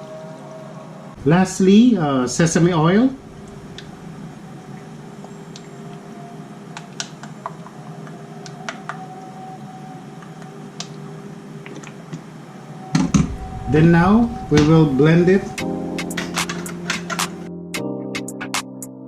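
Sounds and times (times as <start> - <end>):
steady low hum: 1.2 - 6.9, 12.4 - 16.8.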